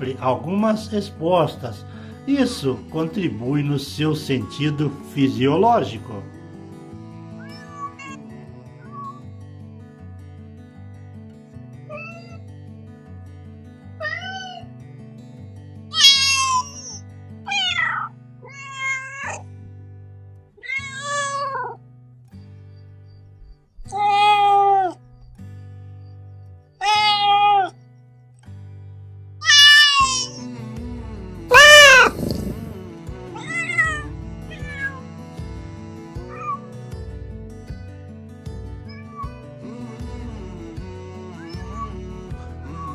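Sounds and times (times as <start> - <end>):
soft background music: 0.0 - 10.2, 29.5 - 42.9
cat meowing: 7.4 - 8.2, 8.8 - 9.2, 11.9 - 12.4, 14.0 - 14.7, 15.9 - 19.4, 20.6 - 21.8, 23.9 - 25.0, 26.8 - 27.7, 29.4 - 30.5, 31.5 - 32.8, 33.4 - 35.0, 36.3 - 36.7, 38.9 - 39.5, 41.3 - 42.9.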